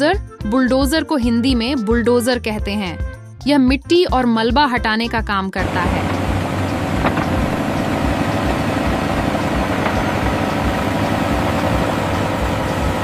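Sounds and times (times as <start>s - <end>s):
bulldozer engine running: 5.6s - 13.0s.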